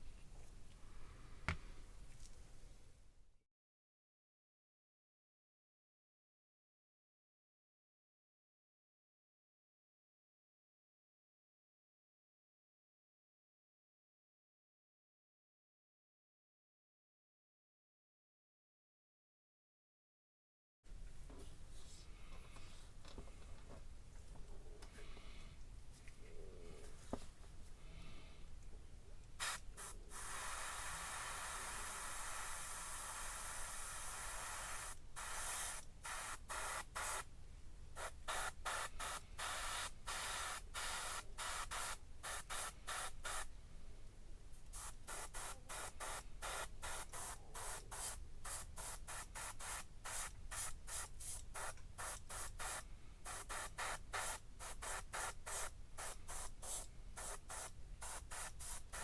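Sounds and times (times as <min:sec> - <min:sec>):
short spray bursts: 0:29.4 - 0:37.3, 0:38.0 - 0:43.5, 0:44.7 - 0:59.0
spray paint hissing: 0:29.4 - 0:37.3, 0:38.0 - 0:43.5, 0:44.7 - 0:59.0.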